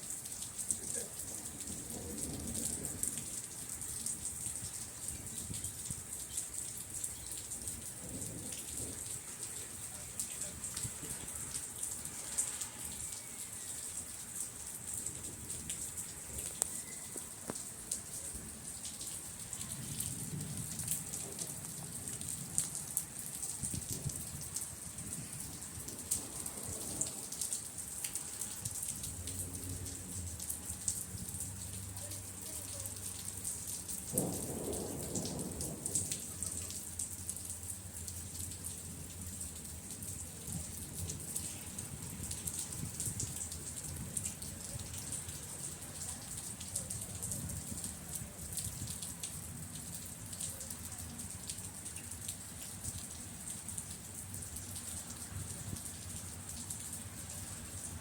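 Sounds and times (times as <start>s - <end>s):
heavy rain: 0.0s - 58.0s
raindrops ticking on a surface: 0.0s - 58.0s
low thunder rumbles: 1.5s - 6.2s, 7.3s - 9.2s, 18.0s - 27.8s, 33.8s - 37.3s.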